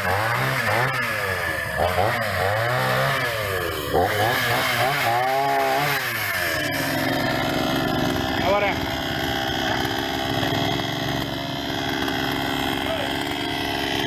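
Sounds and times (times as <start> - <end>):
chainsaw engine revving: 0.0 - 14.0.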